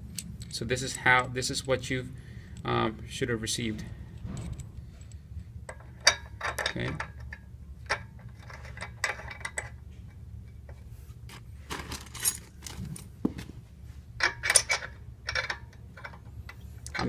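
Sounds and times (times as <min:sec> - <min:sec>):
metal tools clinking: 0:11.7 - 0:13.1, 0:14.2 - 0:16.2.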